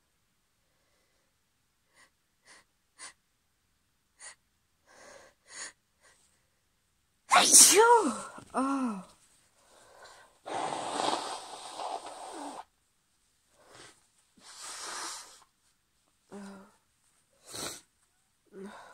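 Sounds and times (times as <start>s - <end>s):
woman breathing through stuffy nose: 9.6s - 12.7s, 13.6s - 15.5s, 17.4s - 17.9s
woman sniffing: 13.7s - 15.5s, 17.4s - 17.9s.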